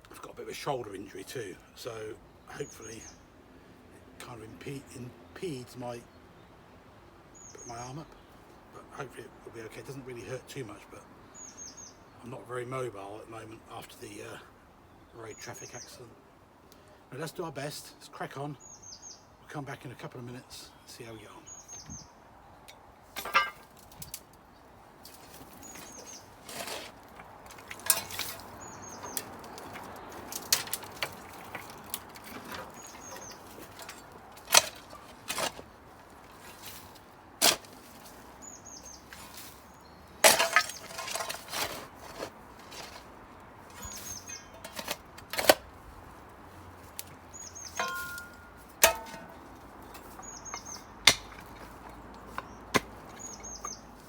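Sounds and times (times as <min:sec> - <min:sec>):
hand digging in soil and rubble: 0:25.0 - 0:54.0
small bird chirping: 0:47.3 - 0:48.5, 0:50.1 - 0:51.0, 0:52.4 - 0:54.0
metallic clink: 0:47.7 - 0:50.6.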